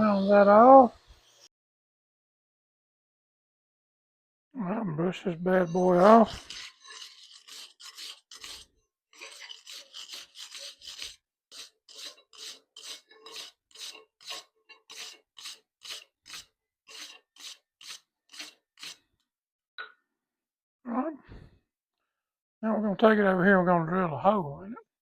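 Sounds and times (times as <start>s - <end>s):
wire brush scrubbing steel bar: 5.5s - 19.1s.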